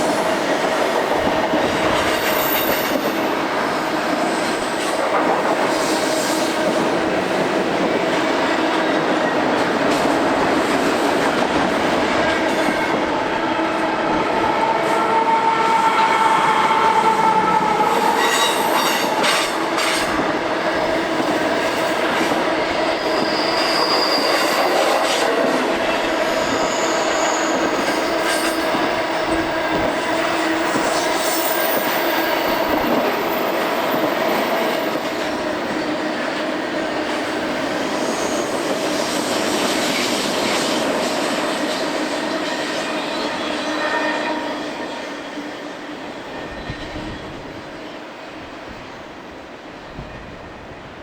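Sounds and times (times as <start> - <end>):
train wheels squealing: 0.0 - 5.0, 13.8 - 21.0, 21.6 - 36.2, 37.6 - 48.3
freight train wheels rumbling on rails: 0.0 - 51.0.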